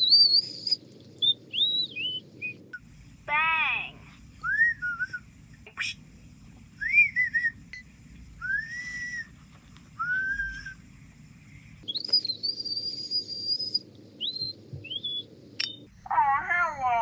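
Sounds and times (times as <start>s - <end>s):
person whistling: 4.4s - 5.2s, 6.8s - 7.6s, 8.4s - 9.3s, 10.0s - 10.8s, 11.8s - 15.2s.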